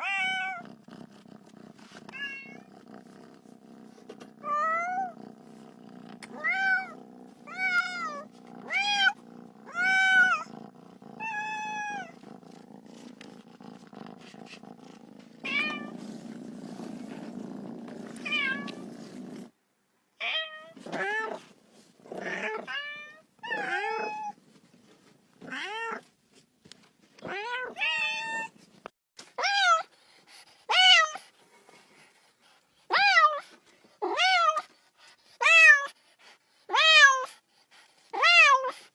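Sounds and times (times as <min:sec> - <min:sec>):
cat meowing: 0:00.0 - 0:00.6, 0:18.2 - 0:18.8.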